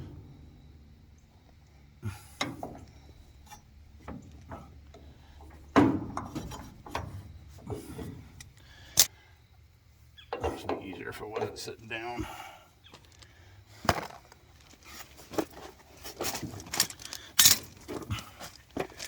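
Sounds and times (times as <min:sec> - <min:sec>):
metal pipe fittings clicking and scraping: 0:16.7 - 0:17.9.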